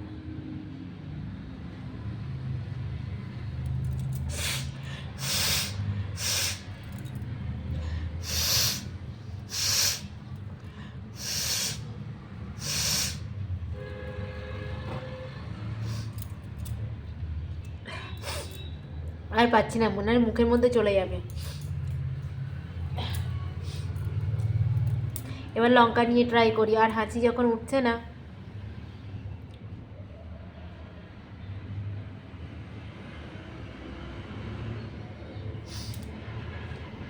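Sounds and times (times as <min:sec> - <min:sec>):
woman forcing air through nose: 0:04.2 - 0:06.8, 0:07.8 - 0:11.9, 0:12.6 - 0:13.3, 0:17.9 - 0:18.6, 0:35.7 - 0:36.1.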